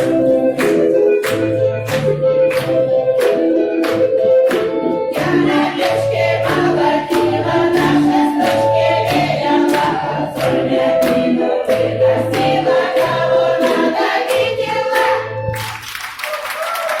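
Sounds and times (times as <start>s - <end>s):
instrumental accompaniment: 0.0s - 15.8s
rhythmic beats: 0.0s - 15.8s
women's choir singing folk song: 5.2s - 15.4s.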